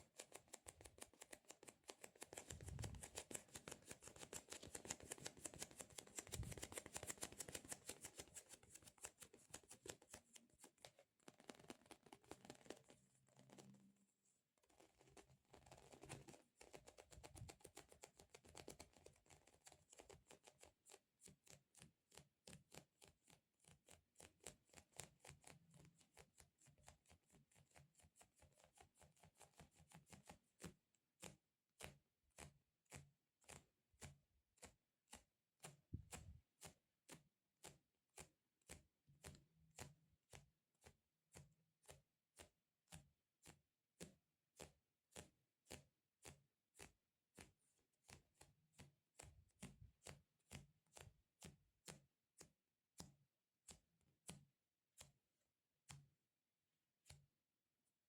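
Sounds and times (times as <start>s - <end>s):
fingertip taps on squishy toy: 30.6s - 40.5s, 55.8s - 56.1s.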